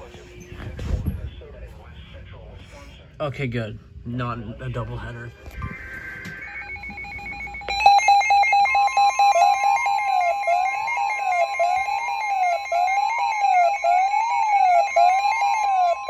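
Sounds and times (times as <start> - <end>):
steady high alert tone: 5.6 - 16.0.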